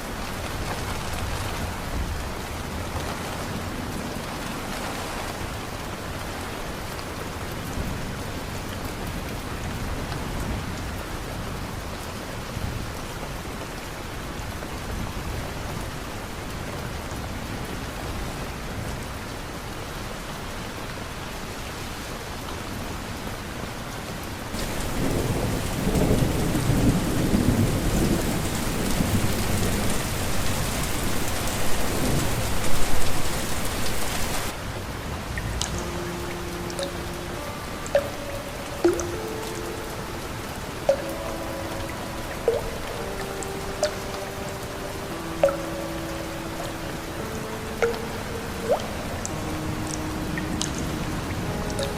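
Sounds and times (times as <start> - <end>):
steady rain falling: 0.0 - 51.9
low rumble of thunder: 24.6 - 34.5.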